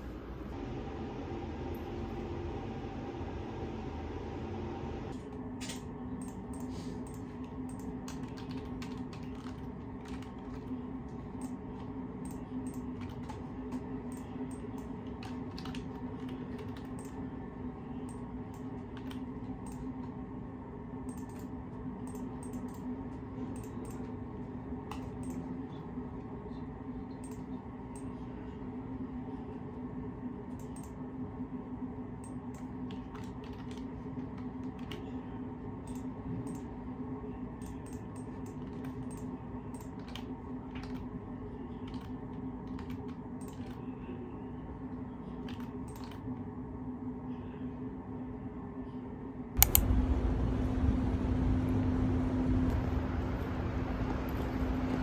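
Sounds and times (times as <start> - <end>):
steady low hum: 0.0 - 55.0
keyboard typing: 5.6 - 11.6, 12.3 - 17.2, 32.9 - 33.9.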